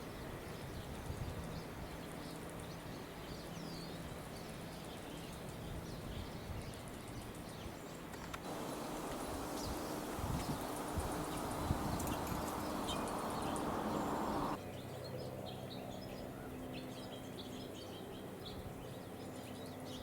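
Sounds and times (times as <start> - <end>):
songbirds chirping: 0.2 - 20.0
background hiss: 8.4 - 14.6
low steady hum: 8.4 - 14.6.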